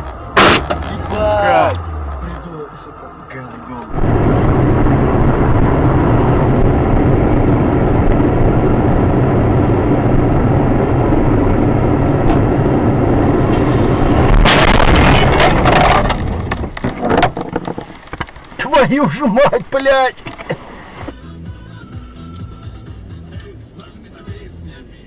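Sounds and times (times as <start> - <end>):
vehicle crash with crunching: 0.0 - 2.2, 13.4 - 19.5
car engine and road noise: 0.0 - 25.0.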